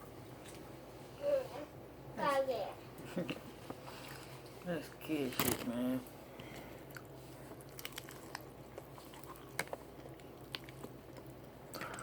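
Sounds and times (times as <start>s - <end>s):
person chewing: 6.5s - 12.0s
wet mouth clicks and crunches: 6.9s - 12.0s.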